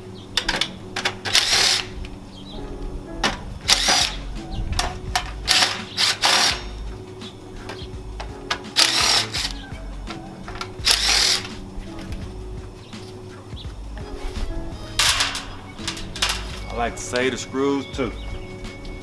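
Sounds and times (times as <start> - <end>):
metallic clicks: 3.2 - 6.8, 14.9 - 17.4
cordless drill running: 10.8 - 11.5.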